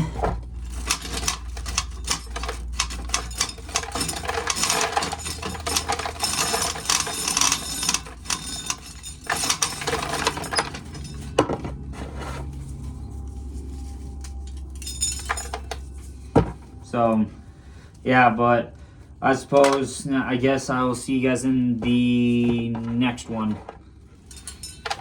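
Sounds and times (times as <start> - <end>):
corn kernels rattling: 0.6 - 11.2.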